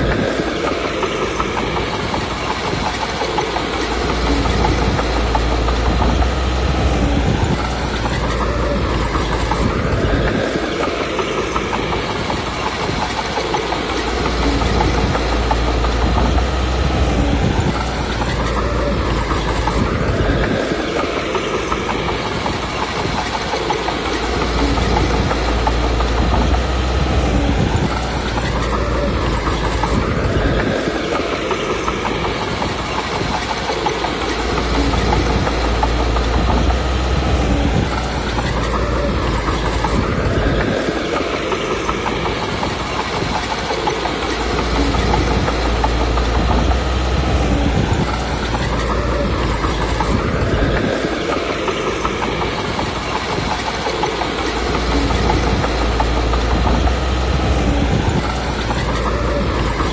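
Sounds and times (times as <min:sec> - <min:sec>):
bulldozer diesel engine: 0:00.0 - 0:59.9
steel tracks clanking: 0:00.0 - 0:59.9.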